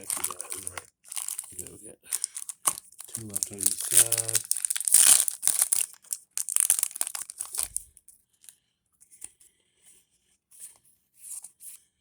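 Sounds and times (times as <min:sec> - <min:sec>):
cards rustling and tapping: 0:00.0 - 0:07.8
foil pack tearing and crinkling: 0:00.0 - 0:07.8.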